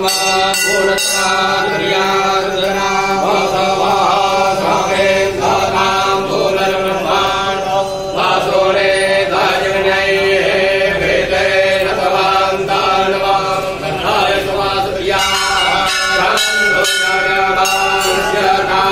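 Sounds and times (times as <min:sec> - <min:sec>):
hand bell ringing rapidly: 0:00.0 - 0:08.9, 0:15.1 - 0:18.9
men chanting: 0:00.0 - 0:18.9.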